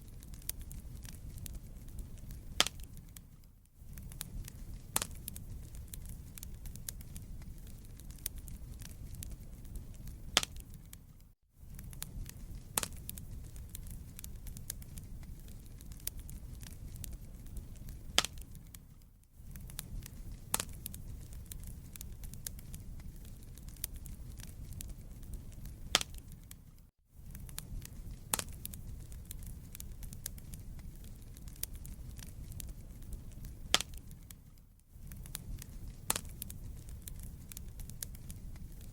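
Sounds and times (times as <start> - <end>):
burning logs crackling and popping: 0.0 - 38.9
fire rumbling in fireplace: 0.0 - 38.9.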